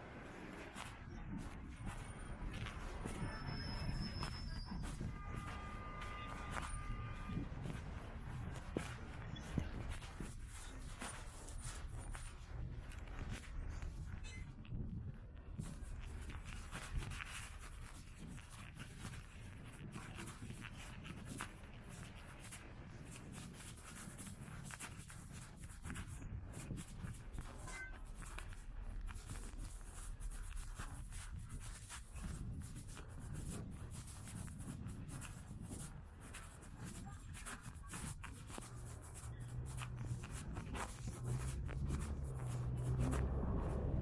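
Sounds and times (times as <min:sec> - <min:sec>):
soft clicks and rubbing: 0:00.4 - 0:44.0
low rumble: 0:38.1 - 0:44.0
low hum: 0:38.2 - 0:44.0.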